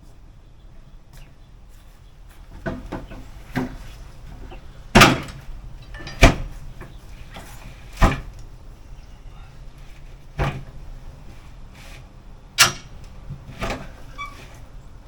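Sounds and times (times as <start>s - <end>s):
sharp knocks and clunks: 2.4s - 8.4s.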